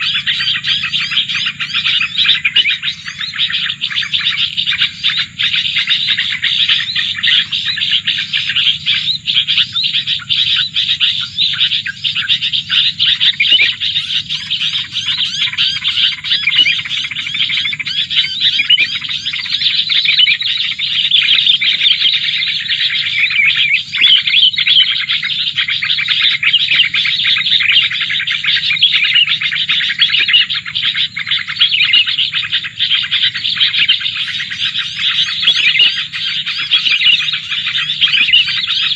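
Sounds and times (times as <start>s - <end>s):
small birds chirping and twittering: 0.0s - 38.9s.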